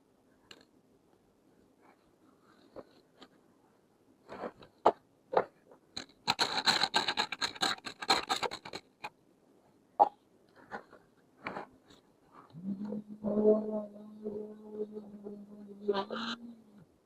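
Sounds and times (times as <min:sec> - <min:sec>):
plastic pieces scraping and rattling: 0:05.4 - 0:09.1
plastic toy pieces knocking: 0:06.0 - 0:09.1.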